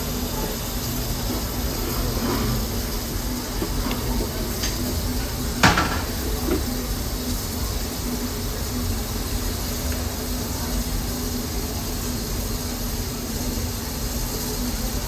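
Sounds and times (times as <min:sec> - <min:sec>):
steam locomotive hiss and rumble: 0:00.0 - 0:15.0
sharp knock: 0:05.6 - 0:06.1.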